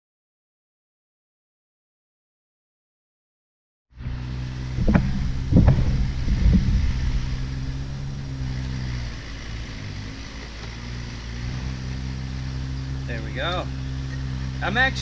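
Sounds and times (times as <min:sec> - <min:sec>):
engine running: 0:03.9 - 0:15.0.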